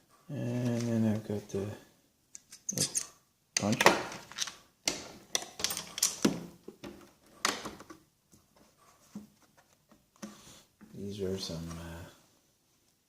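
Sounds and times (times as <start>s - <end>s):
metal hand tools clinking: 5.6s - 6.3s.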